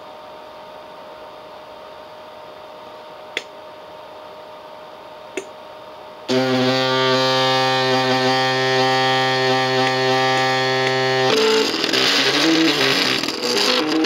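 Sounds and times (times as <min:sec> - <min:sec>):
machine humming: 0:05.0 - 0:14.0
stepper motors whining: 0:06.3 - 0:14.0.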